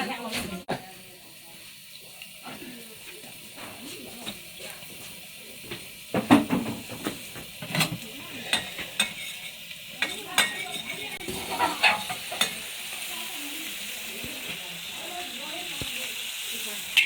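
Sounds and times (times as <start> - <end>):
steady sizzling: 0.0 - 17.0
spatula clanking and scraping wok: 3.4 - 13.1.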